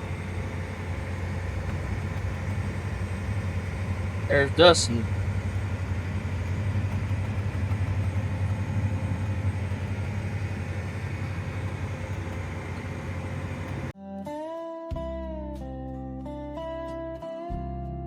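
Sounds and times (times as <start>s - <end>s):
engine running with low drone: 0.0s - 14.0s.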